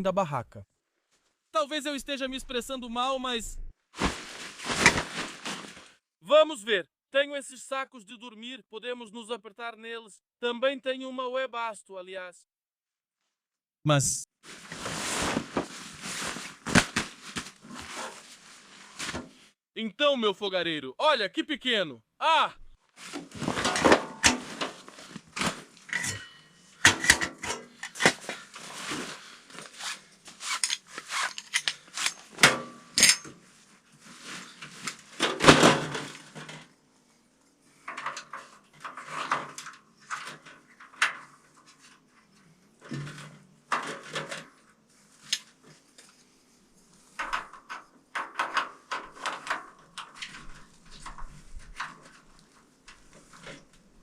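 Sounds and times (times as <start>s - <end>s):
camping gear clattering: 4.0s - 5.9s, 23.0s - 36.7s, 37.7s - 45.6s, 47.1s - 53.9s.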